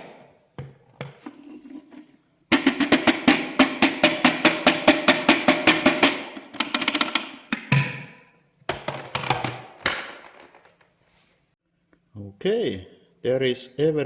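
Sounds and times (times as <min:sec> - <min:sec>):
percussive music beat: 0:02.5 - 0:06.8.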